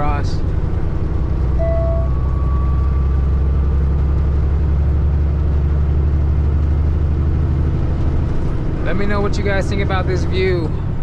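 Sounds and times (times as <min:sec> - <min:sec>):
truck diesel and road drone: 0:00.0 - 0:11.0
brief faint tone: 0:01.6 - 0:03.4.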